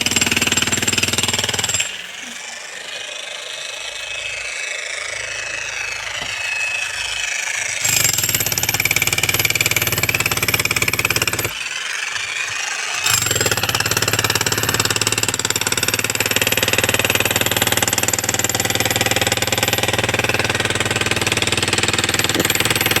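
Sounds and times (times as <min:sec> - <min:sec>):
chipping hammer chiselling concrete: 0:00.0 - 0:02.1, 0:06.0 - 0:23.0
chipping hammer motor running: 0:00.0 - 0:23.0.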